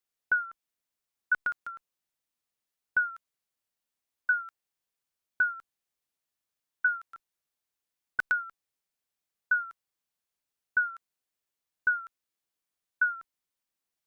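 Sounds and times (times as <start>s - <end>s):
electronic timer beeps: 0.3s - 0.6s, 1.3s - 1.8s, 3.0s - 3.2s, 4.3s - 4.6s, 5.4s - 5.6s, 6.8s - 7.2s, 8.2s - 8.6s, 10.8s - 11.0s, 11.9s - 12.1s, 13.0s - 13.3s.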